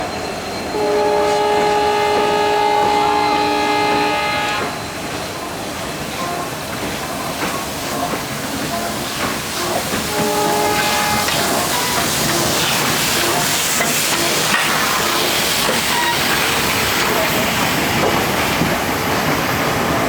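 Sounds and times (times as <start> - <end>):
steam hissing: 0.0 - 20.0
steam locomotive whistle: 0.7 - 5.1, 9.6 - 13.6.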